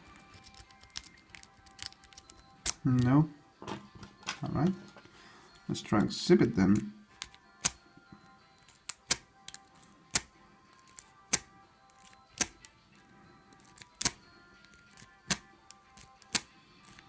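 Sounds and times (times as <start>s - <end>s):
lock pick clicking in padlock: 0.2s - 3.1s, 8.6s - 12.7s, 13.5s - 17.0s.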